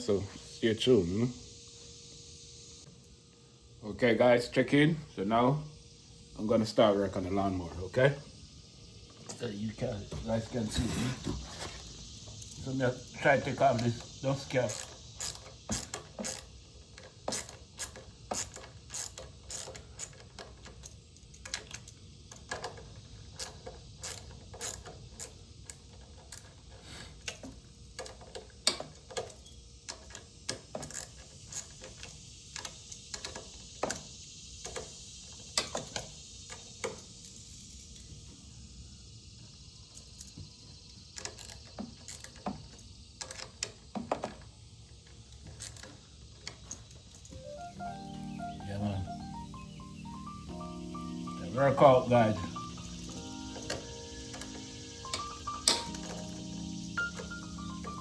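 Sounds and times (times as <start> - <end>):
ratchet wrench clicking: 12.0 - 38.1, 41.1 - 44.2, 52.8 - 58.0.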